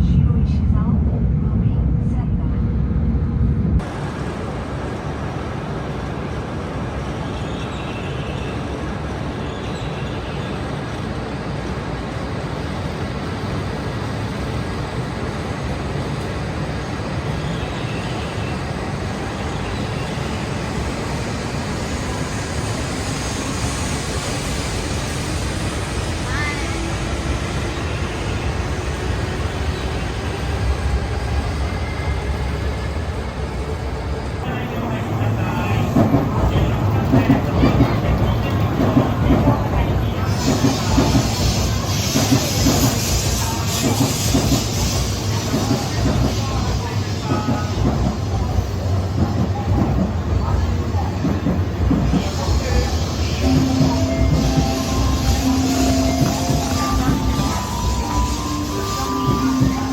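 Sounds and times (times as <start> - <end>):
train running noise: 0.0 - 59.9.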